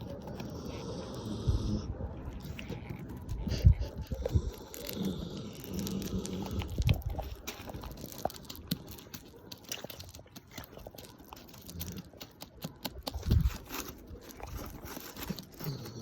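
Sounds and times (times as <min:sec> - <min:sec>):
dog snoring: 0:00.4 - 0:02.0.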